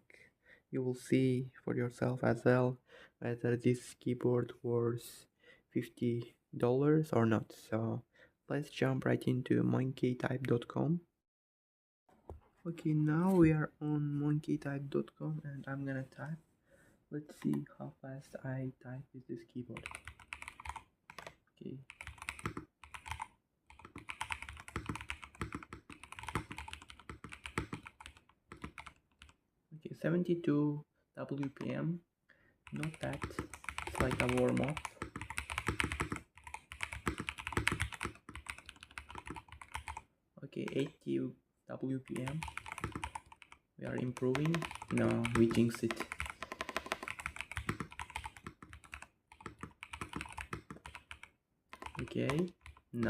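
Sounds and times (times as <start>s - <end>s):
fast typing on mechanical keyboard: 19.8s - 21.3s, 21.9s - 29.3s, 32.7s - 40.0s, 42.1s - 53.0s.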